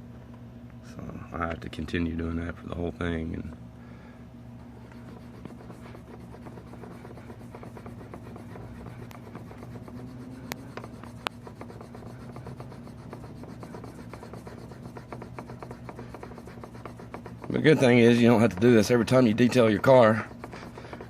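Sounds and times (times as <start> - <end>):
steady low hum: 0.0 - 21.0
eraser rubbing on plastic: 4.8 - 21.0.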